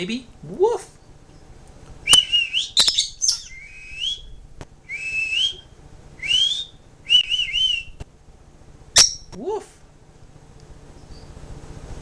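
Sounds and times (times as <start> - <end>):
parrot rising whistles: 2.0 - 8.0
parrot chirps and squeaks: 2.7 - 3.6, 9.0 - 9.3.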